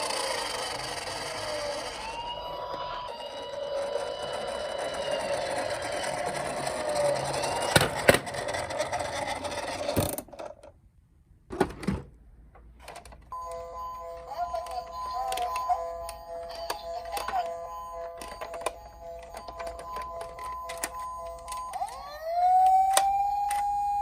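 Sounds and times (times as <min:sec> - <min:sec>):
toy electronic siren wailing: 0:00.0 - 0:08.5, 0:13.4 - 0:24.0
toy rolling rattle: 0:00.0 - 0:10.6, 0:14.2 - 0:24.0
chiming jingle: 0:13.3 - 0:22.1.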